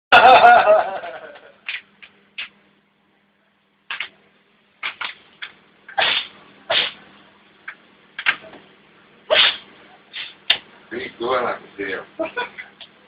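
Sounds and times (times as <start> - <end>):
cat sneezing: 5.9 - 7.0, 9.3 - 10.4.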